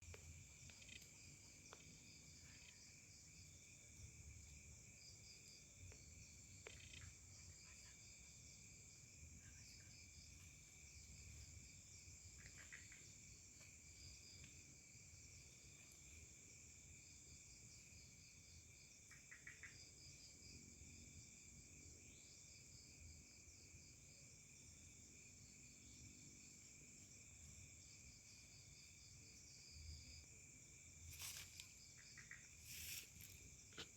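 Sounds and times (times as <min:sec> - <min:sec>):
short insect chirps: 0:00.3 - 0:02.9, 0:06.5 - 0:08.0, 0:31.0 - 0:33.9
insect trilling: 0:00.5 - 0:01.8, 0:06.5 - 0:08.1, 0:31.1 - 0:33.9.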